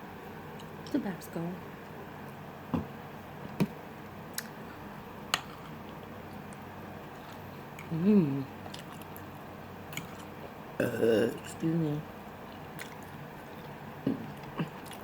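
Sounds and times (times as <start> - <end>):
person humming mmm: 7.9 - 8.5, 10.8 - 11.5, 14.0 - 14.9.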